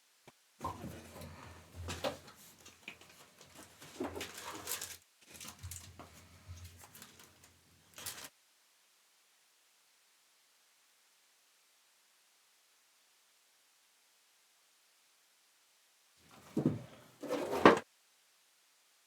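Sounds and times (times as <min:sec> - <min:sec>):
card packaging crinkling and tearing: 0:03.6 - 0:08.3.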